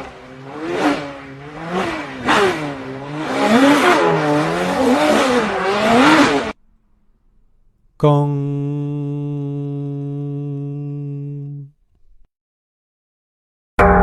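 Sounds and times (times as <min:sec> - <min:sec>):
car engine revving: 0:00.0 - 0:08.9.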